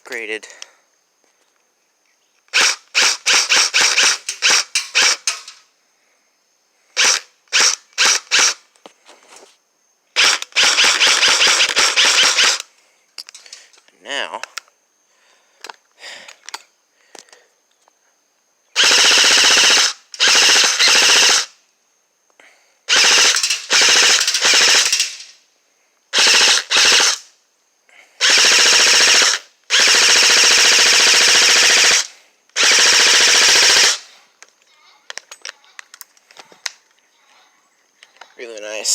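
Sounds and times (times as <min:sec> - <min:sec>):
gun handling clicks: 0:02.4 - 0:05.6, 0:10.2 - 0:14.8, 0:23.0 - 0:25.4, 0:33.7 - 0:37.0
airsoft gun full-auto bursts: 0:02.5 - 0:05.6, 0:07.0 - 0:08.6, 0:10.2 - 0:12.7, 0:18.8 - 0:21.6, 0:22.9 - 0:25.4, 0:26.1 - 0:27.3, 0:28.2 - 0:34.1.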